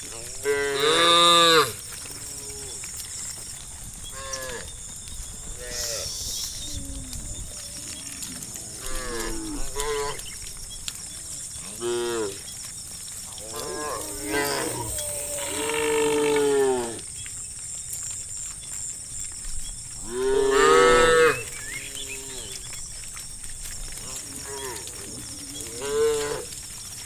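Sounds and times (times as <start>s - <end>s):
cattle mooing: 0.2s - 2.8s, 5.6s - 10.3s, 13.4s - 17.0s, 20.1s - 22.6s, 24.0s - 26.6s.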